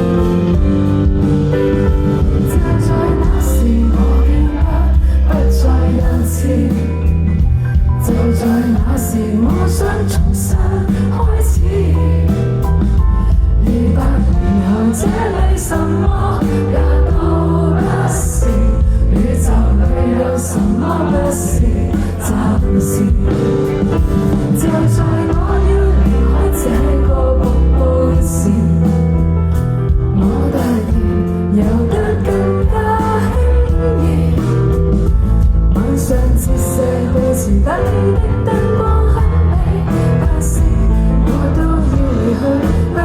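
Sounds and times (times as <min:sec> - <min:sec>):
live band playing pop: 0:00.0 - 0:43.0
person singing: 0:02.5 - 0:07.2, 0:13.6 - 0:29.0, 0:30.2 - 0:34.7, 0:35.7 - 0:43.0.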